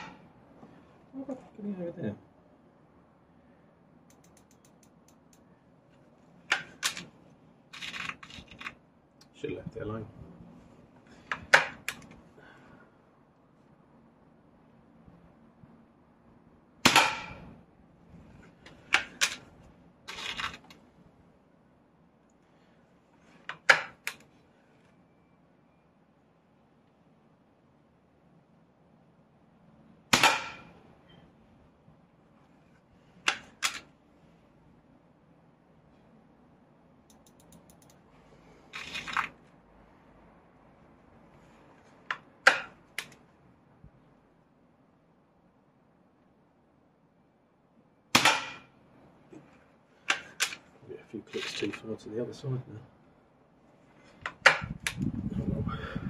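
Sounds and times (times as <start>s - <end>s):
quick faint clicks: 4.1s - 5.4s, 37.1s - 38.0s.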